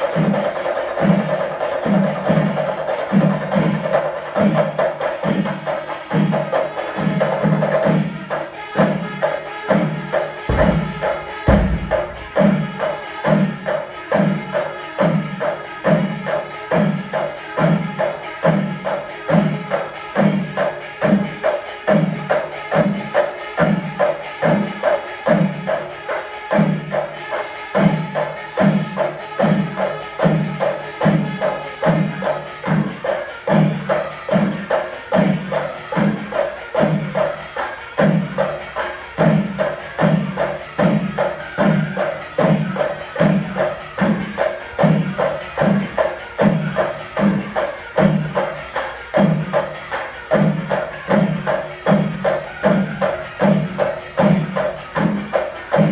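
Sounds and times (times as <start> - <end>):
hand cymbals clashing: 10.5 - 13.0
drums beating: 10.5 - 13.1.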